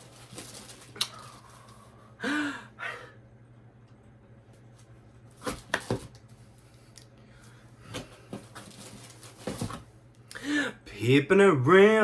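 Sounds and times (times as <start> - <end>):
person gasping: 1.0 - 3.2, 10.3 - 10.9.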